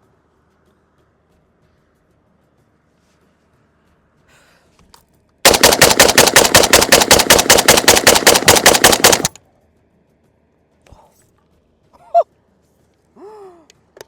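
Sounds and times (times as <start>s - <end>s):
rapid rifle fire: 5.5s - 9.4s.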